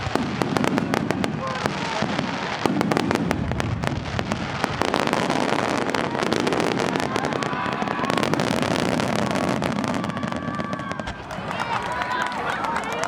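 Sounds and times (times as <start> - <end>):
fireworks popping and banging: 0.0 - 13.0.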